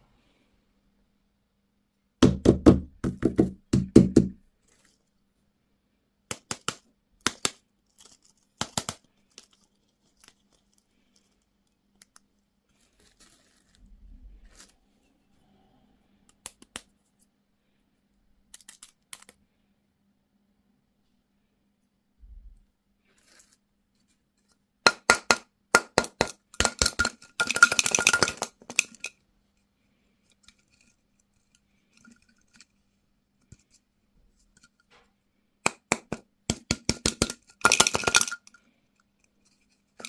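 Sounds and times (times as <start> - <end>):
objects knocking and thumping: 24.9 - 29.1, 35.7 - 38.5.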